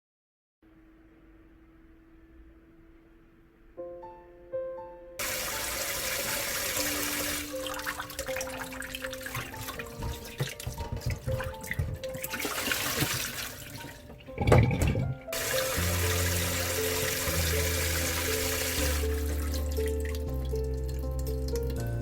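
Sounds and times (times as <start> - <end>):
gentle piano music: 3.5 - 22.0
low splash: 5.2 - 21.8
tap water running into sink: 5.2 - 21.9.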